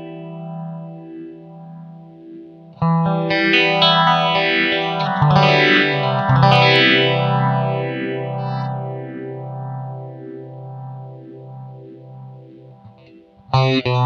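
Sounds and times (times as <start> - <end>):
electric guitar with phaser: 0.0 - 14.0.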